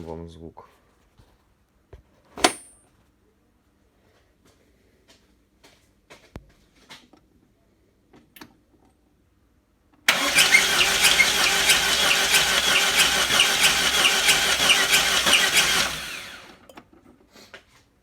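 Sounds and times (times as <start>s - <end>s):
high rhythmic engine squeak: 10.1s - 16.1s
car engine running: 10.1s - 16.6s.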